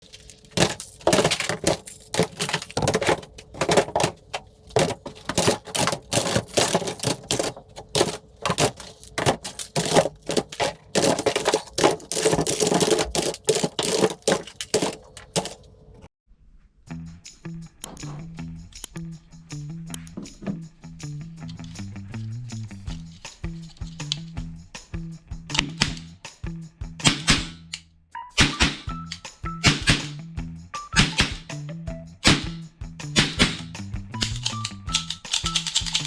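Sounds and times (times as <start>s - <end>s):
plastic toy guns clicking: 34.2s - 36.0s.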